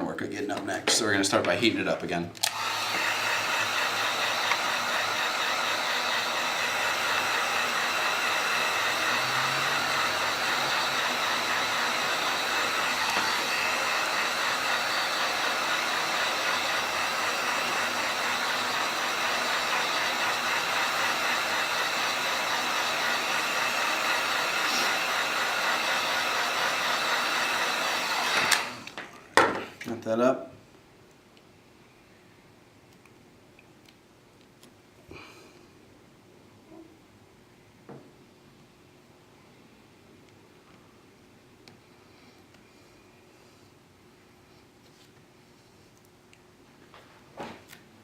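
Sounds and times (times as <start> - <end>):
hot-air tool blowing: 2.4 - 29.0.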